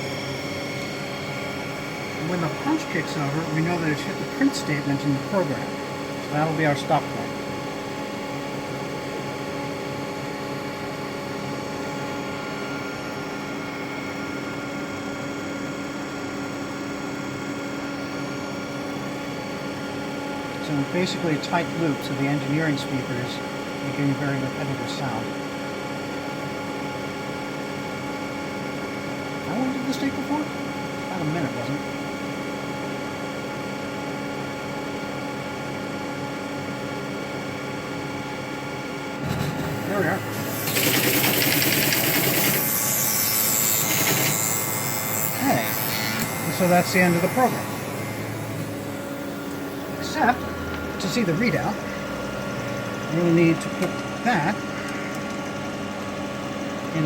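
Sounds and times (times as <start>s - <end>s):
machine-room hum: 0.0s - 57.0s
repetitive buzzing tone from loudspeaker: 43.6s - 51.8s.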